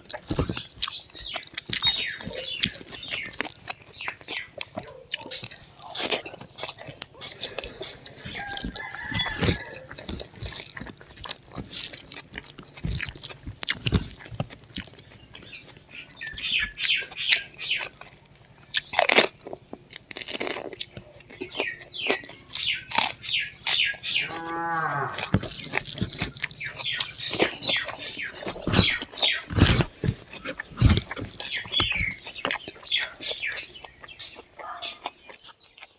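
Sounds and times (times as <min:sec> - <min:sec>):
close chewing with lip smacks: 0:00.0 - 0:24.2, 0:25.2 - 0:35.9.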